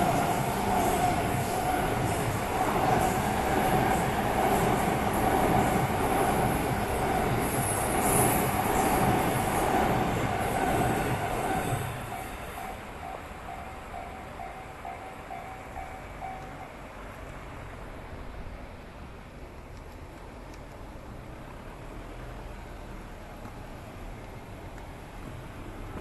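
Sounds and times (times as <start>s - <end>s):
train wheels squealing: 0.0s - 16.9s
crossing warning bell ringing: 0.0s - 17.1s.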